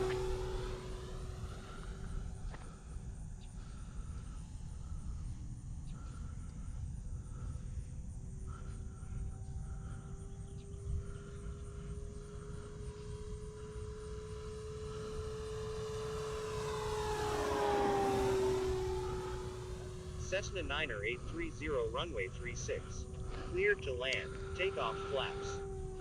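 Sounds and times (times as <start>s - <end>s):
electric model plane motor whining: 0.0s - 26.0s
wind rumble on microphone: 1.6s - 13.7s.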